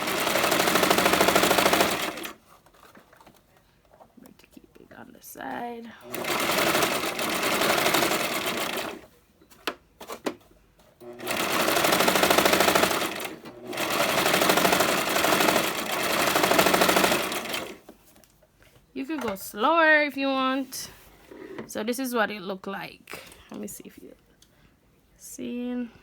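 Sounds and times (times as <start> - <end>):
sewing machine rattling: 0.0 - 3.4, 6.0 - 9.1, 11.0 - 17.9.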